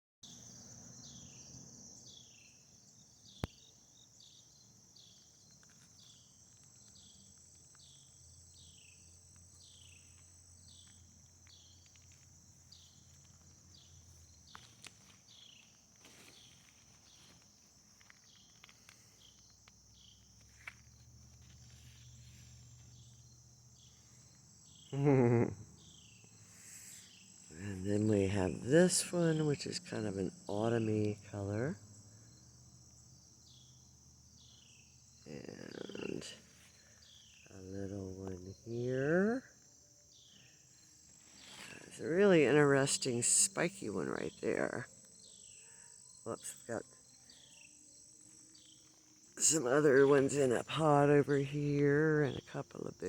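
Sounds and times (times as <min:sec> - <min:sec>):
insects chirping: 0:00.2 - 0:53.0.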